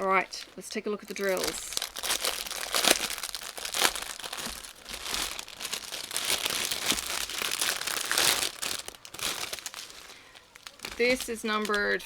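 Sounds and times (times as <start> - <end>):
plastic bags crinkling: 0.0 - 12.0.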